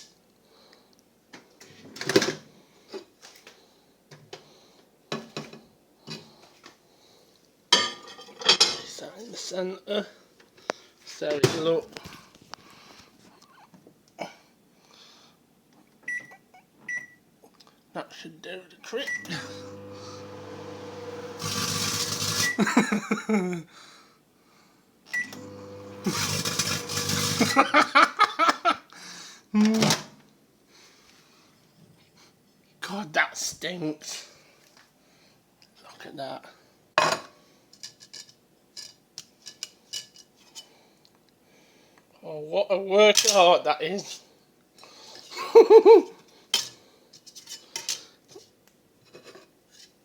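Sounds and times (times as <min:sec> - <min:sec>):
microwave oven humming: 0:19.2 - 0:22.6, 0:25.2 - 0:27.6.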